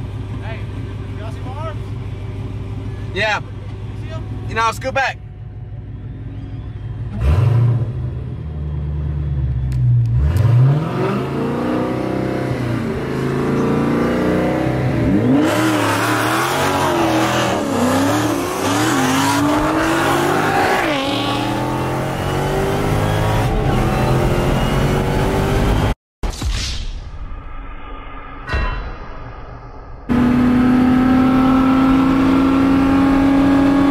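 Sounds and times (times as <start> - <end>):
car engine accelerating hard: 6.0 - 26.0, 30.1 - 33.9.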